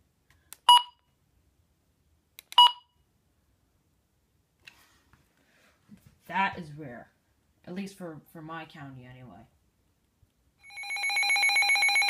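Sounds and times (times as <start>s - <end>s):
short electronic beeps: 0.7s - 1.0s, 2.6s - 2.9s.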